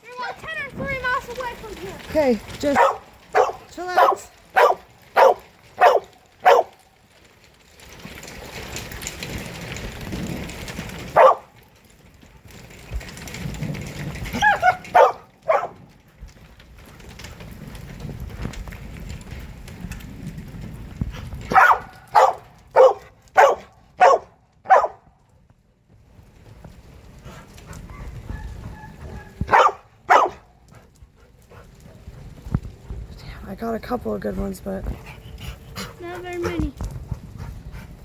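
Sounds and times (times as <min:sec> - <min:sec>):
dog barking: 0:02.7 - 0:06.8, 0:11.1 - 0:11.5, 0:14.4 - 0:15.8, 0:21.5 - 0:25.1, 0:27.9 - 0:30.5.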